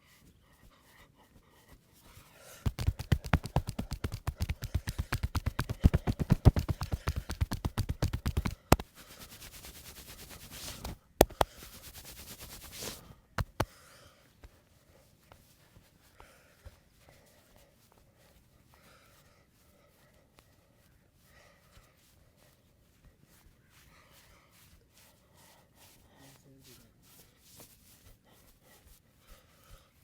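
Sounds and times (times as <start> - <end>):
rubbing hiss: 2.7 - 13.6
hands striking body rapidly: 2.7 - 13.7
sharp snaps: 2.7 - 13.7.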